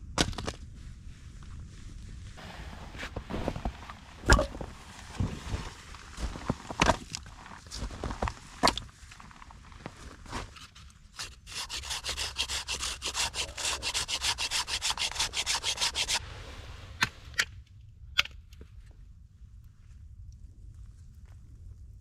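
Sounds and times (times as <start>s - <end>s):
hand saw cutting wood: 11.2s - 16.2s.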